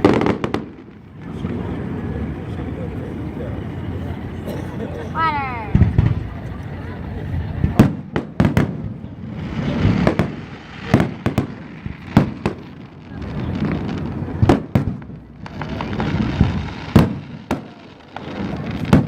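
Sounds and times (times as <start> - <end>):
fireworks banging: 0.0 - 2.6, 3.5 - 19.0
fireworks hissing: 7.5 - 19.0.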